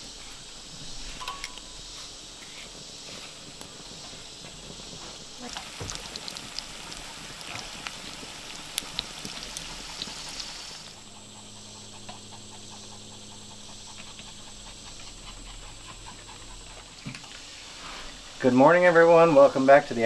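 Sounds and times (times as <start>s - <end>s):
dog panting: 5.6s - 17.1s.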